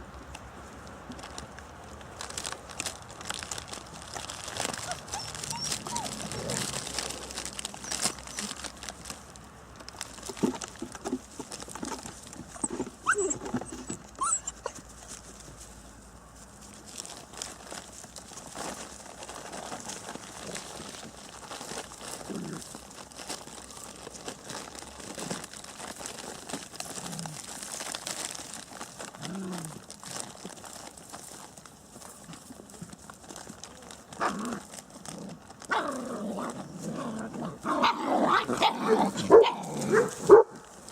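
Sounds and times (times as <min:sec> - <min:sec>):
crinkling and rustling: 0:00.0 - 0:40.9
puppies chewing: 0:00.1 - 0:40.9
short puppy whines: 0:04.8 - 0:06.4, 0:12.6 - 0:14.8.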